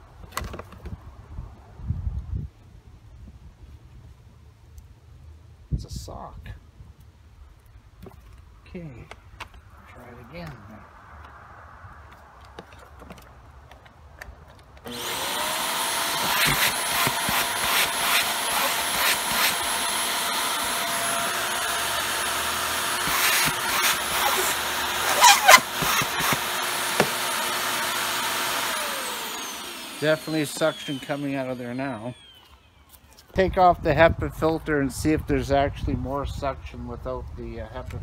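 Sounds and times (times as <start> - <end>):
vacuum cleaner motor whining: 14.9 - 32.9.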